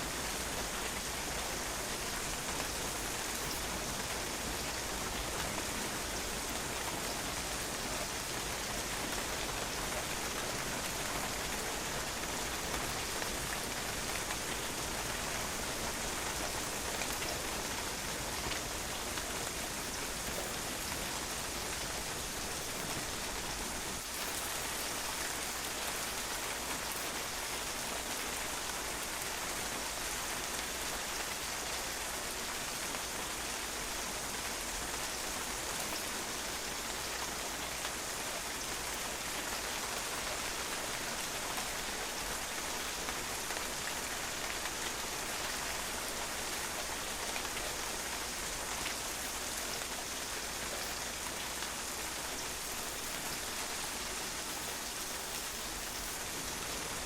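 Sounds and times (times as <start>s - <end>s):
rain pattering on patio: 0.0s - 57.0s.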